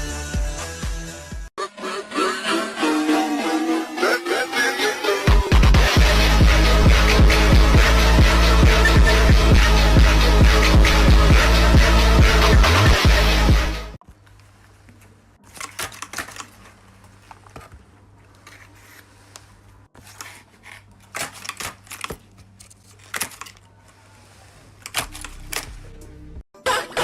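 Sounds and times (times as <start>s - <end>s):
paper rustling and clicking: 14.0s - 24.0s, 24.7s - 25.9s.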